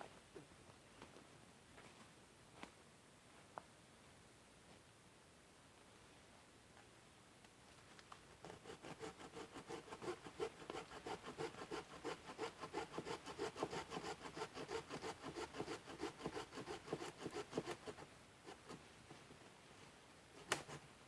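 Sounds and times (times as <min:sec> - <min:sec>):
hand saw cutting wood: 0:08.4 - 0:18.8, 0:20.4 - 0:20.9.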